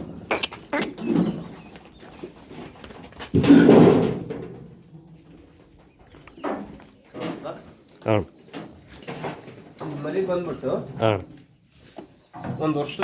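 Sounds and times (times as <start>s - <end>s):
sheep bleating: 0.3s - 0.9s.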